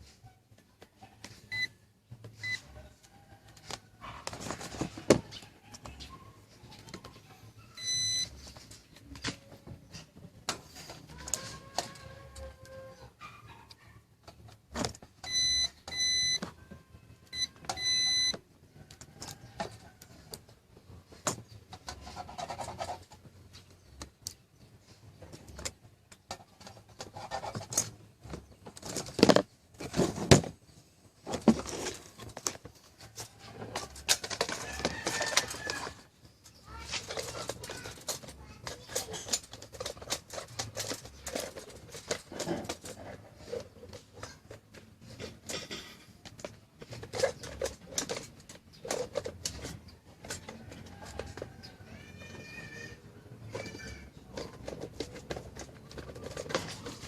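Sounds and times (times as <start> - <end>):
high-pitched electronic beeps: 7.8 - 8.3, 17.4 - 18.4
small parts clicking and rattling: 31.5 - 52.8, 53.4 - 57.0.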